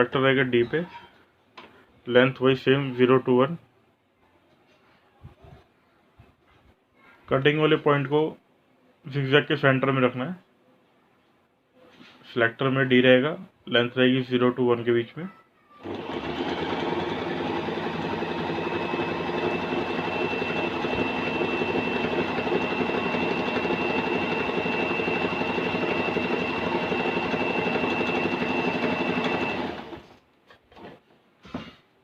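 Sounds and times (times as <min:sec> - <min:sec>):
electric sewing machine running: 0:15.8 - 0:30.2.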